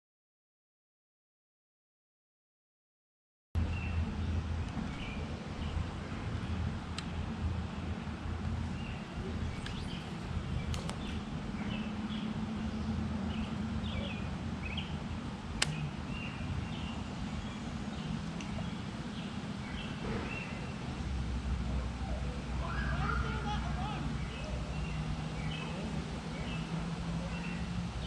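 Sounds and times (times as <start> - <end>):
steady low rumble: 3.6 - 28.0
small birds chirping: 8.6 - 21.1, 22.0 - 28.0
sharp clicks: 9.5 - 11.3, 15.6 - 15.8.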